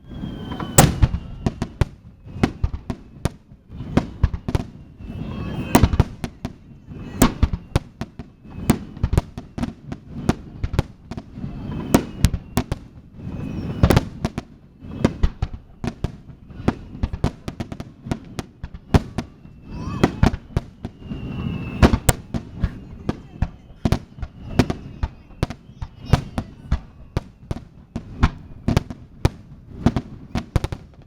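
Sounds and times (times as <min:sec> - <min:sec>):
firework whistles: 0:00.0 - 0:31.0
fireworks bursting: 0:00.0 - 0:31.0.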